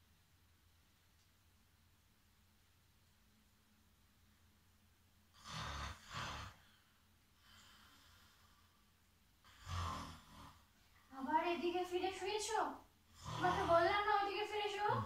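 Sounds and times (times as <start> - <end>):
man snoring: 5.4 - 6.7, 9.4 - 10.7, 13.1 - 14.0
faint breath: 5.8 - 9.1.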